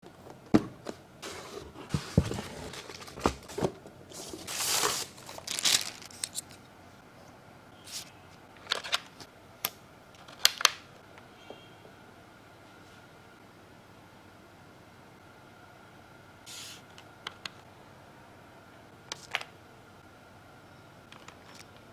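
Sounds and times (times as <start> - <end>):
packaging knocks and clicks: 0.6 - 6.6
packaging tearing: 2.5 - 6.6.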